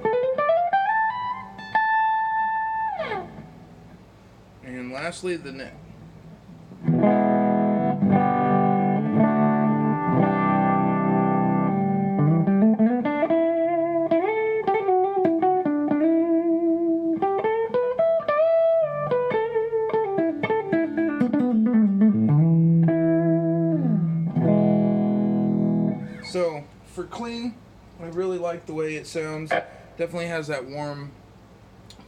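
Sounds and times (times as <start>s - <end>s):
clean electric guitar playing: 0.0s - 4.0s, 5.9s - 26.6s.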